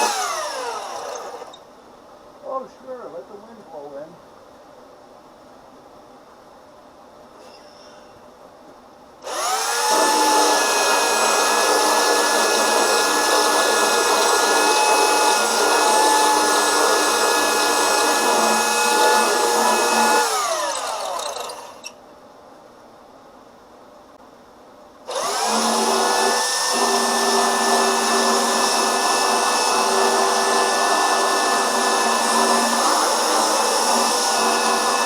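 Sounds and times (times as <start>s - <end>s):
power sander whining: 0.0s - 1.6s, 9.3s - 21.8s.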